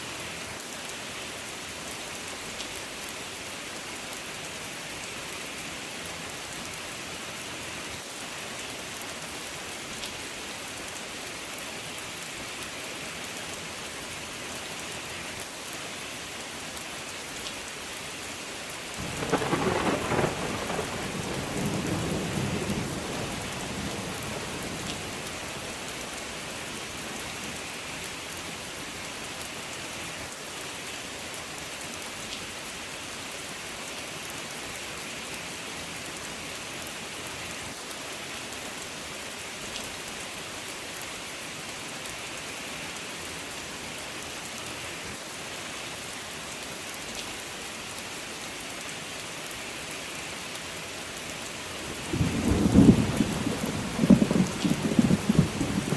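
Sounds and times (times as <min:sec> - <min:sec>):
steady rain falling: 0:00.0 - 0:55.9
thunder rumble: 0:19.0 - 0:25.1, 0:52.0 - 0:55.9.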